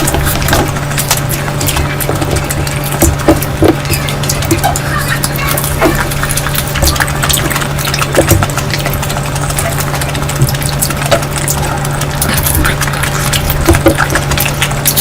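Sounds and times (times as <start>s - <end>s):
steady low hum: 0.0s - 15.0s
wet chewing and lip smacks: 0.0s - 15.0s.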